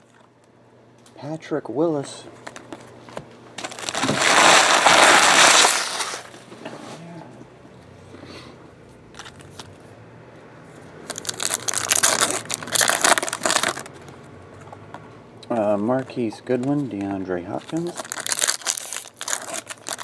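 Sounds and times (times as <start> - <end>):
card pack wrappers crinkling: 3.6 - 6.4, 11.0 - 14.0, 16.8 - 20.0.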